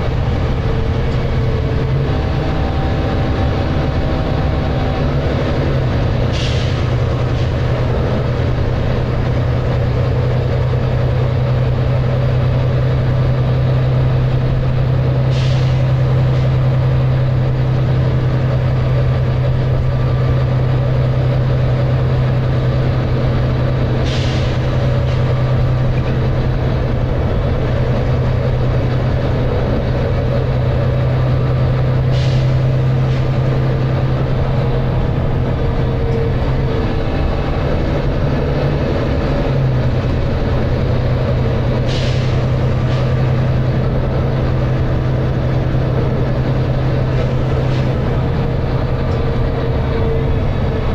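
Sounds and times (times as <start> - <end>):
bus diesel engine running: 0.0 - 50.9
air brake hisses: 6.2 - 7.6, 15.3 - 16.2, 24.0 - 25.3, 32.1 - 33.4, 41.8 - 43.1.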